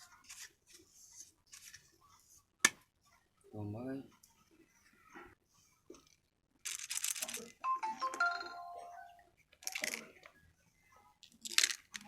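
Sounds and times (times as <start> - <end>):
electronic beeping melody: 7.7 - 9.2.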